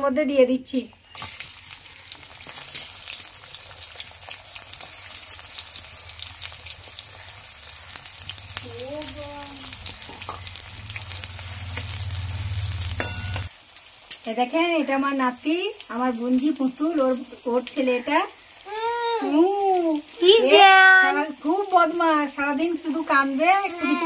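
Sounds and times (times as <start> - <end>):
onions sizzling in hot oil: 1.1 - 24.0
person calling out: 18.7 - 19.7.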